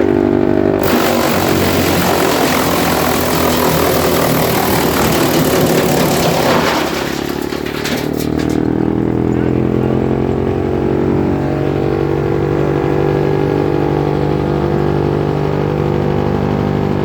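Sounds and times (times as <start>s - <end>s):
wood chipper grinding: 0.0s - 10.5s
wood chipper running empty: 0.3s - 10.4s.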